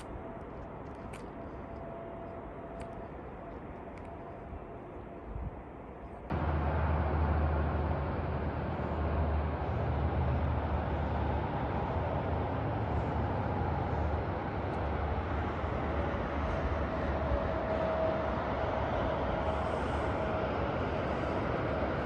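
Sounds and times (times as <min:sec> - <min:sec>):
vehicle rumble and road noise: 0:00.0 - 0:22.0.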